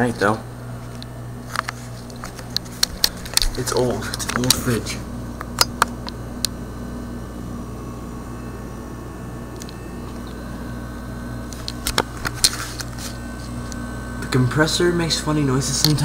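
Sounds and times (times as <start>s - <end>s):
refrigerator compressor humming: 0.0s - 16.0s.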